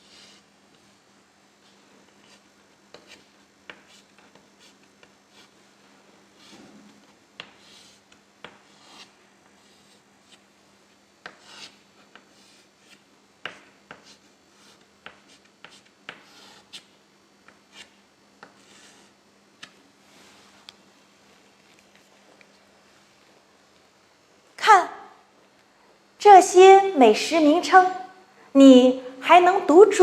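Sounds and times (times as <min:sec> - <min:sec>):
pen scratching while handwriting: 0:00.0 - 0:00.5, 0:01.6 - 0:05.6, 0:06.4 - 0:06.6, 0:07.4 - 0:10.5, 0:11.2 - 0:16.9, 0:17.5 - 0:19.2.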